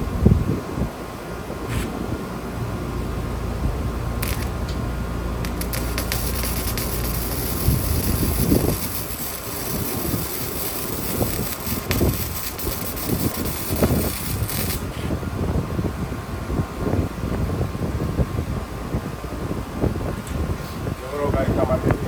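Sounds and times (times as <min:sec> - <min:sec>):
welder arc crackling and hissing: 0:04.2 - 0:15.2.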